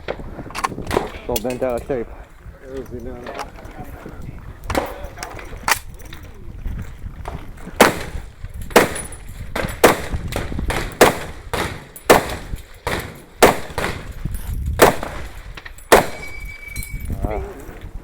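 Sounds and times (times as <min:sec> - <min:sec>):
gunshots with echo: 0:07.8 - 0:14.1, 0:14.8 - 0:16.4.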